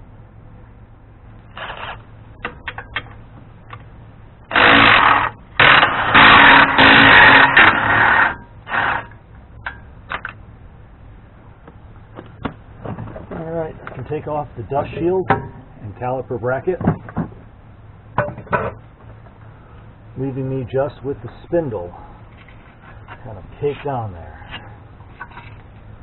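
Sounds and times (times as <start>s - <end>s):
power tool rattling: 4.5s - 9.2s.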